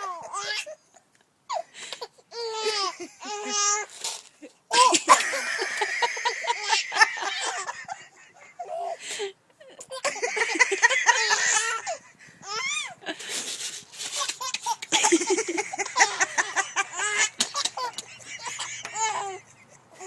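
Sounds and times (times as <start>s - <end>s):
baby laughing: 1.5s - 3.9s, 4.7s - 9.0s, 9.8s - 13.1s, 14.0s - 20.0s.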